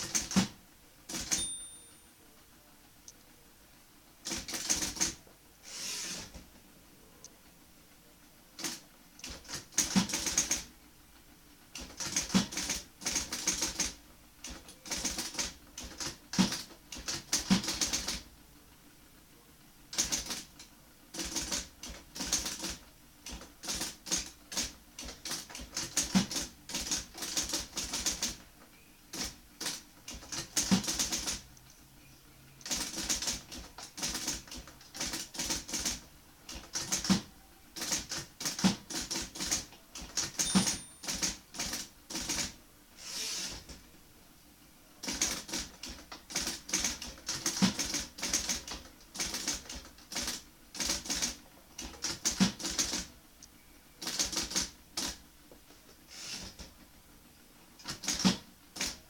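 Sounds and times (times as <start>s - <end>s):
electric typewriter key strikes: 1.1s - 1.9s, 36.7s - 42.4s.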